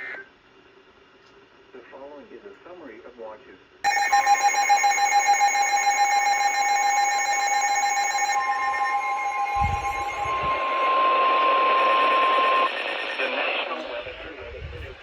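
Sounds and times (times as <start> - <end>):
two-tone alert alarm: 3.9 - 13.3.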